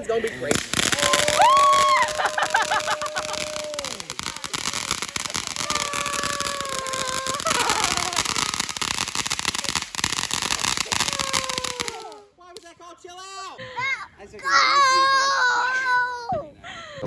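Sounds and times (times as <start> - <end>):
firework fountain hissing and crackling: 0.0 - 12.7.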